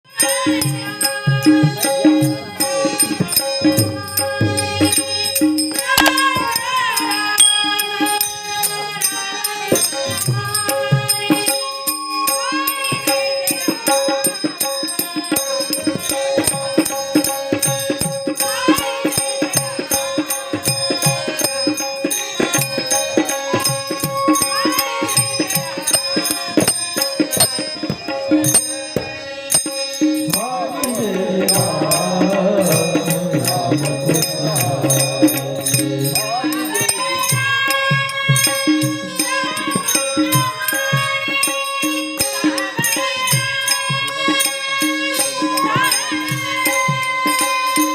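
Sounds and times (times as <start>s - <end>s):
hand cymbals and drum beat: 0.0s - 47.9s
held melodic tones: 0.7s - 17.2s.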